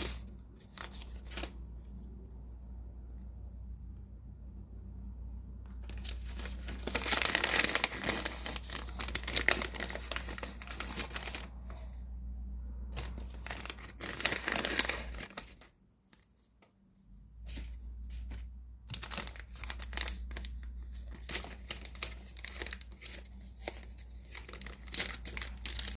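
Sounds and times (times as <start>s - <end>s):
plastic packaging crinkling and tearing: 0.0s - 1.7s, 5.7s - 11.8s, 12.9s - 15.8s, 17.6s - 26.0s.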